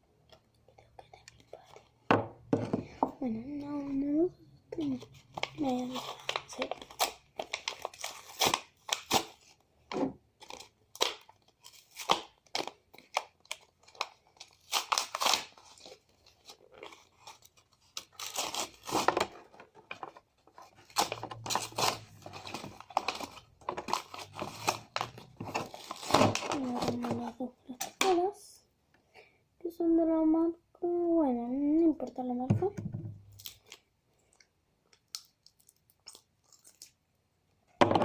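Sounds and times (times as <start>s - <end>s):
plastic packaging being handled: 10.4s - 28.2s.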